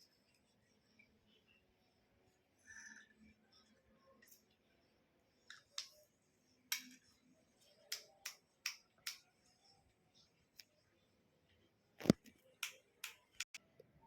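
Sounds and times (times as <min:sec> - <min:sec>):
faint sharp plastic clicks: 0:07.9 - 0:09.3.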